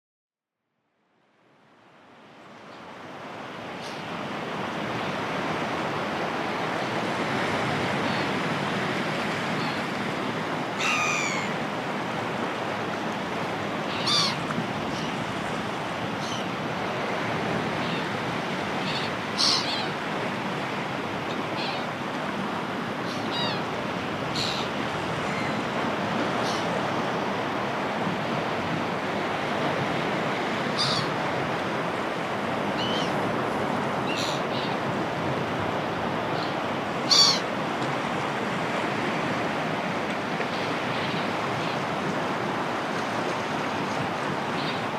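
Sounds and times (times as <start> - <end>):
sea waves washing on shore: 2.0 - 44.9
gulls calling: 9.2 - 27.4, 29.2 - 38.7, 44.0 - 44.9.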